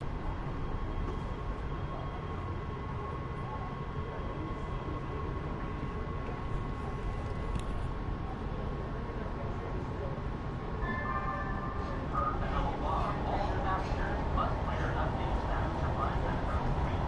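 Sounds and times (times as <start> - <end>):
train rumbling: 9.5 - 17.0
constant high tone: 10.8 - 13.8.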